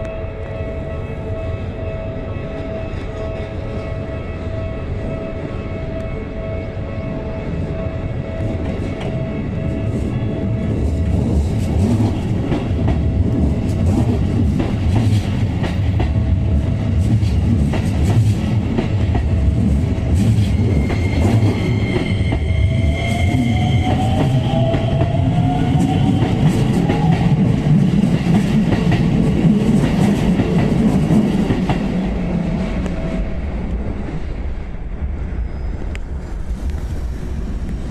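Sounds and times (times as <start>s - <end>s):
train rumble with wheel clatter: 0.0s - 37.9s
rising whine: 19.3s - 26.7s.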